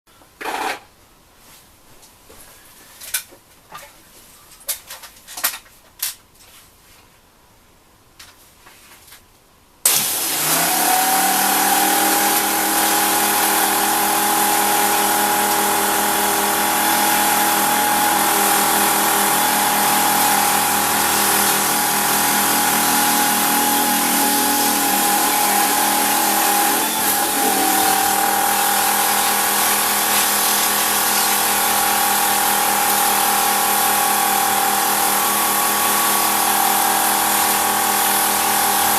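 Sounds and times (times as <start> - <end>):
pressure washer pump whining: 9.9 - 38.9.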